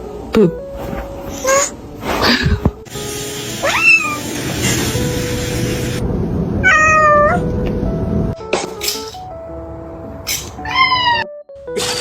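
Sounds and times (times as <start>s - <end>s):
cat meowing: 3.6s - 4.4s, 6.6s - 7.5s, 10.6s - 11.3s.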